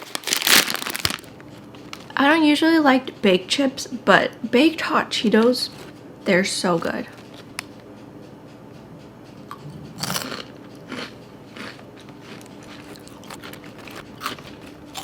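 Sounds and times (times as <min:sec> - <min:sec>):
chewing crunches: 0:09.4 - 0:15.0.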